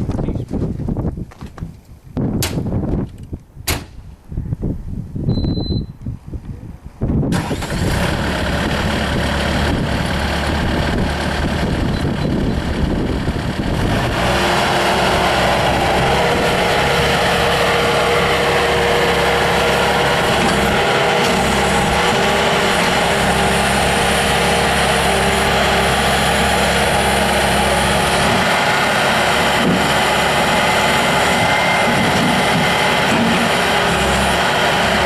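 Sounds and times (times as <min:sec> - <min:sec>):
diesel engine running: 0:07.3 - 0:35.0
steady whine: 0:09.3 - 0:35.0.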